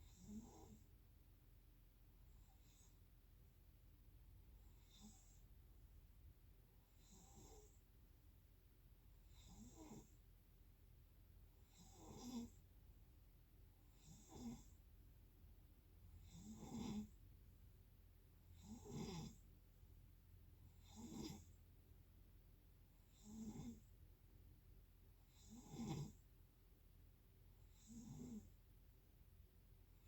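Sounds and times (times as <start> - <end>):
rattling snores: 0.0 - 0.8, 4.7 - 5.4, 7.0 - 7.8, 9.3 - 10.2, 11.6 - 12.6, 13.9 - 14.8, 16.2 - 17.2, 18.5 - 19.4, 20.7 - 21.6, 23.1 - 23.9, 25.3 - 26.2, 27.7 - 28.6.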